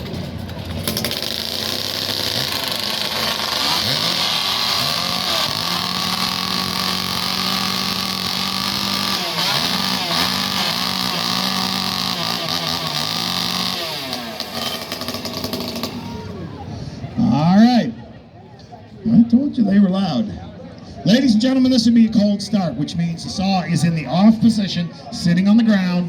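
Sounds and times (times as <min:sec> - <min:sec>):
chainsaws cutting a log: 0:00.8 - 0:16.4.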